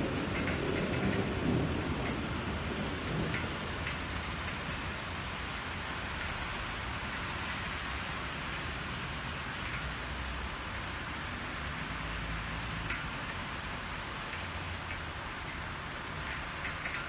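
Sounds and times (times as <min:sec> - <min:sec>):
thunder rumble: 0:00.0 - 0:05.0
hailstones ticking: 0:00.0 - 0:17.0
rain hissing: 0:00.0 - 0:17.0.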